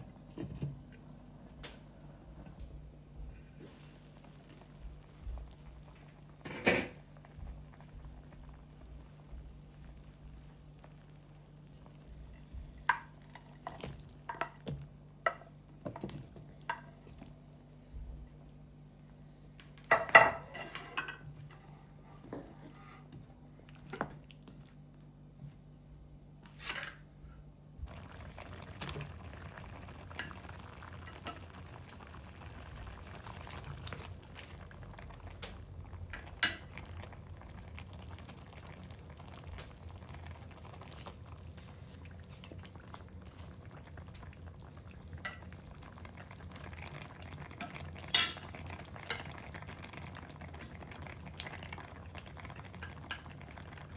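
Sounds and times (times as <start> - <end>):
soup bubbling in a pot: 3.3 - 26.4, 27.7 - 53.9
pot and utensil clinks: 48.1 - 48.5.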